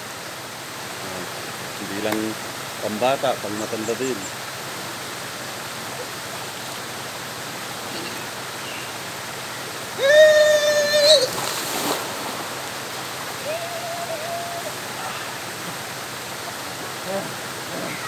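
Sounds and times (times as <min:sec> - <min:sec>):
spring water flowing: 0:00.0 - 0:18.0
person shouting high-pitched: 0:10.0 - 0:11.4, 0:13.4 - 0:14.8
water splash: 0:10.9 - 0:13.6.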